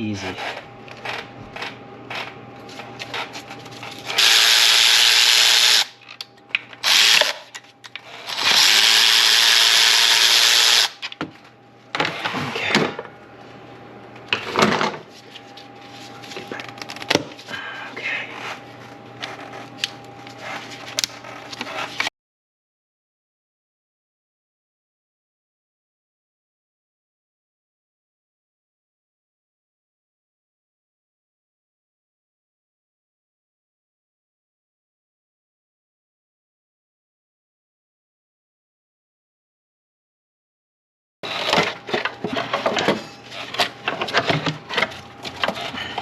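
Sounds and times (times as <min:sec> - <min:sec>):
power tool running: 0:04.1 - 0:06.0, 0:06.8 - 0:07.4, 0:08.1 - 0:11.0.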